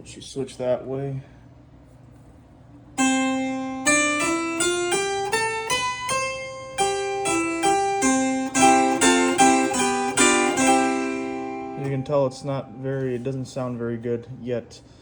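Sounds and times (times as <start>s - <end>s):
harpsichord plucked notes: 3.0s - 13.7s.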